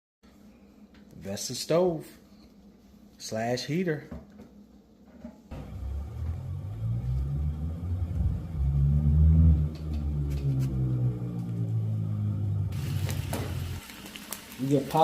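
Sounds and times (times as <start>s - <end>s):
vehicle engine rumbling: 5.5s - 13.8s.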